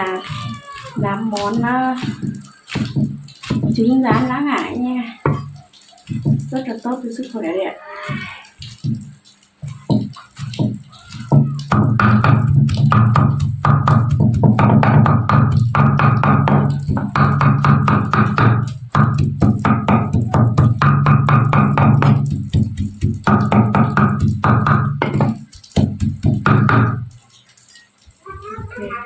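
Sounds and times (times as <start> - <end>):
knife chopping on cutting board: 10.0 - 27.0.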